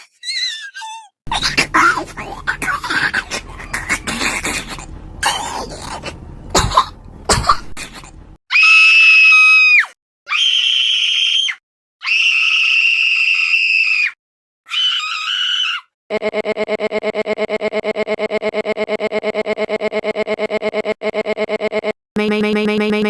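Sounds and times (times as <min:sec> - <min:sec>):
rough coughing and rasping: 0:01.3 - 0:08.4
long high-pitched screams: 0:08.5 - 0:15.9.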